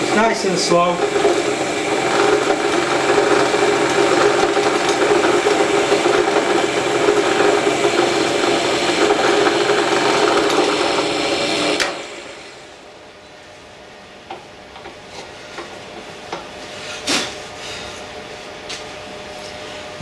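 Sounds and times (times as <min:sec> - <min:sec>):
drill boring into wood: 0:00.0 - 0:12.8.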